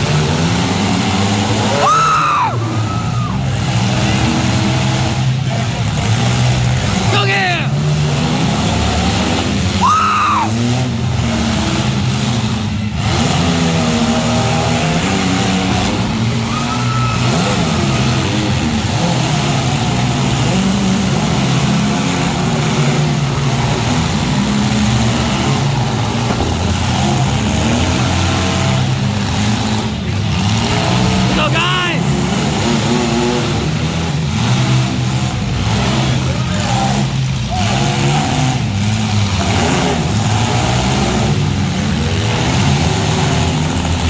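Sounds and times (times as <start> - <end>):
car engines revving: 0.0 - 44.0
short squeals: 1.4 - 3.8, 15.5 - 18.3.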